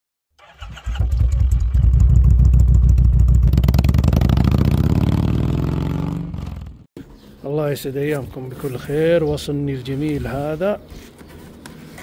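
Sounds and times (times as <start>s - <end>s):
motorcycle engine revving: 0.4s - 6.9s.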